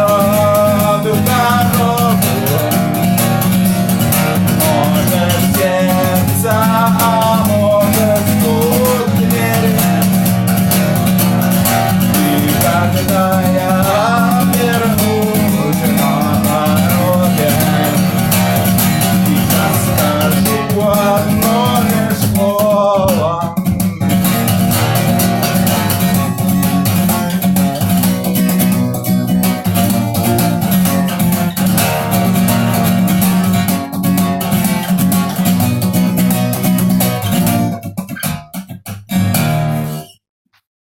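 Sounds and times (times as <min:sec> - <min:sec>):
guitar playing: 0:00.0 - 0:40.2.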